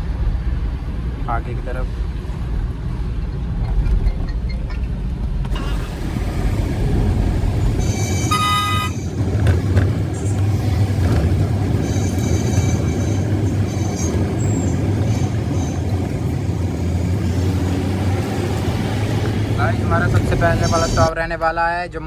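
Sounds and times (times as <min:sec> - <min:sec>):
truck engine and road rumble: 0:00.0 - 0:22.0
vehicle horn: 0:05.6 - 0:09.2.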